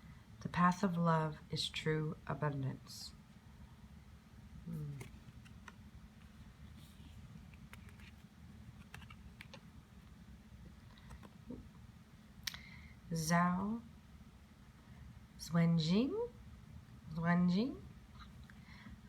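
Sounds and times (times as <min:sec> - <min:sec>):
paper cards clicking and tapping: 0:08.8 - 0:09.6.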